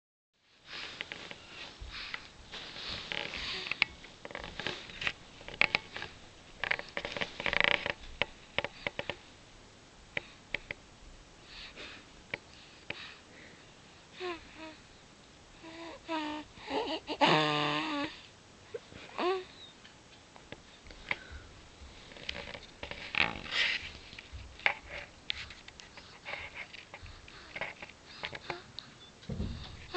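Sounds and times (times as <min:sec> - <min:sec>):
breathy sniffing and snorting: 0:00.6 - 0:08.0, 0:20.8 - 0:29.9.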